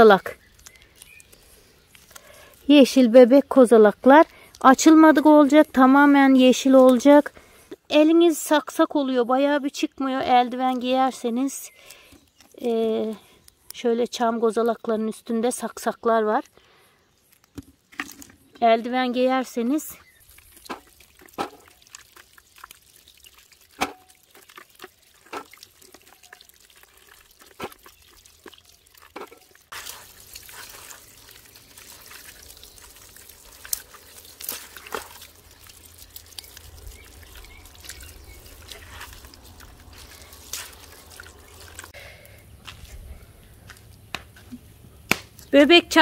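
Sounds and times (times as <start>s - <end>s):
water dripping: 0.0s - 16.5s, 17.2s - 42.8s
small clicks of pine cones: 0.4s - 2.6s, 16.4s - 18.3s
running water with splashes: 18.0s - 42.0s.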